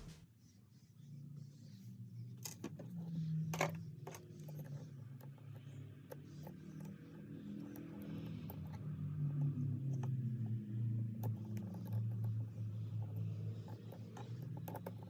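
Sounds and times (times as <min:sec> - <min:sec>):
steady low hum: 0:00.0 - 0:02.3
small metal tools clicking and tapping: 0:11.2 - 0:15.0.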